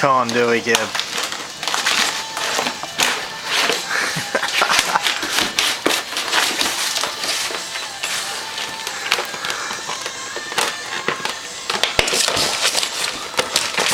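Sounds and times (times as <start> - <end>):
puppy chewing plastic collar: 4.5 - 13.9.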